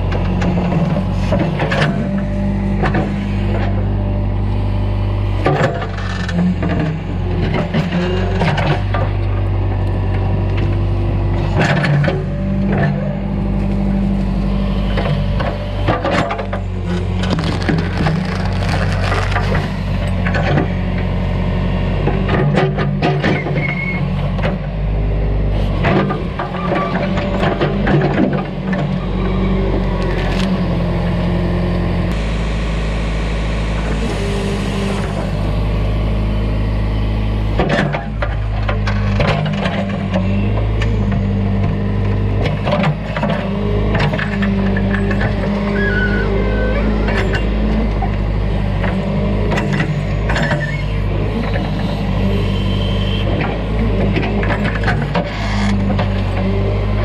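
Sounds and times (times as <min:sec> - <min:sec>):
diesel engine running: 0:00.0 - 0:57.0
wood cracking and breaking: 0:16.9 - 0:19.9.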